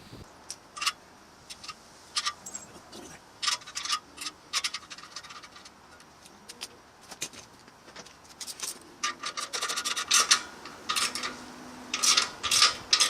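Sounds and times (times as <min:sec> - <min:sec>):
small metal parts clinking: 0:03.4 - 0:13.0.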